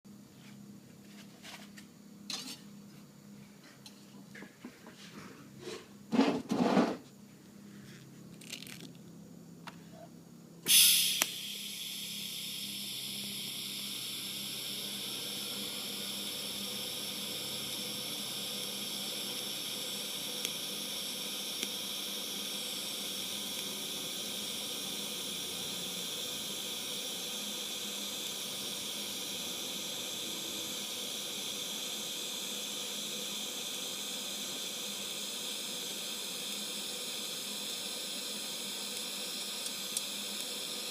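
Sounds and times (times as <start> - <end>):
hiss of welding arc and gas: 10.6 - 40.9
welding arc striking burst: 10.7 - 40.9.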